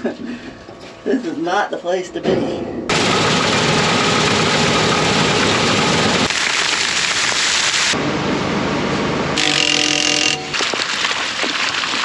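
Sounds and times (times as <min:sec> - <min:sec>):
machinery roaring: 0:02.5 - 0:06.3.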